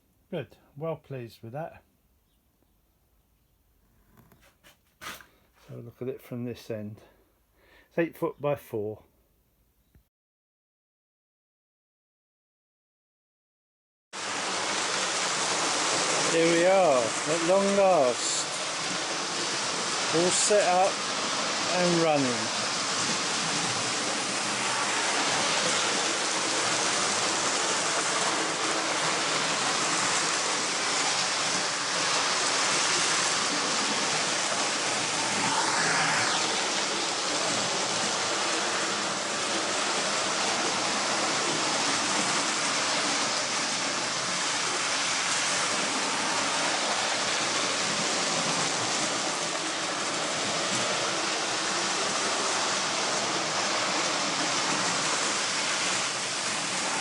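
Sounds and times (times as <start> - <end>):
model trains whirring on track: 22.4 - 57.0
brief higher sound: 34.7 - 37.2.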